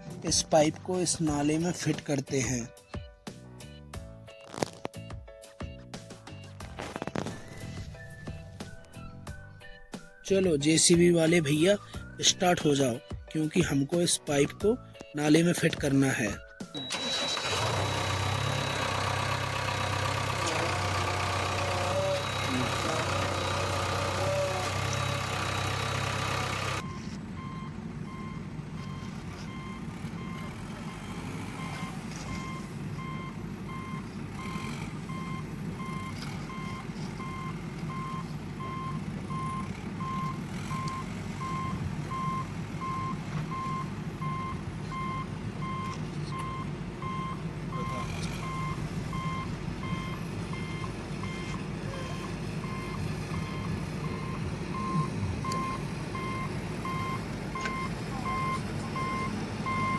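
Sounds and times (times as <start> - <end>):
reversing alarm beeping: 16.3 - 59.9
low engine hum: 16.5 - 59.9.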